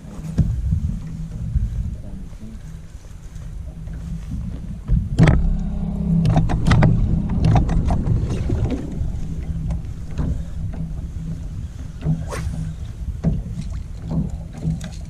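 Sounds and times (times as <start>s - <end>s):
outboard motor humming: 0.0s - 15.0s
sharp knocks and clatters: 4.9s - 15.0s.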